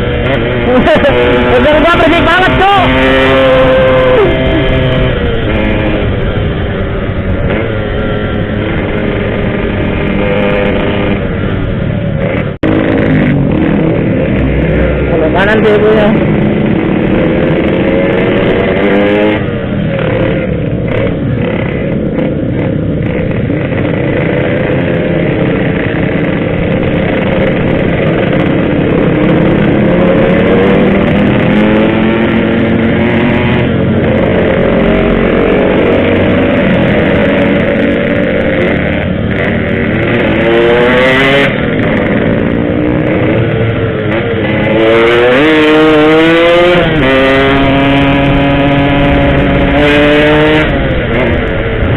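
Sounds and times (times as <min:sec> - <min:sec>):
two-stroke motorcycle engine revving: 0:00.0 - 0:51.9.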